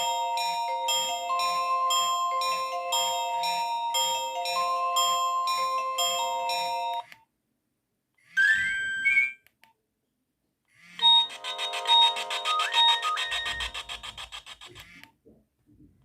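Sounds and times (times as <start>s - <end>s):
phone ringtone melodies: 0.0s - 7.1s, 11.0s - 14.6s.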